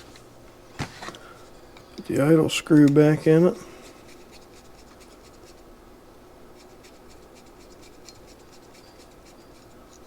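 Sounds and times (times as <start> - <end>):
faint scratching: 2.7 - 5.6, 6.6 - 10.0.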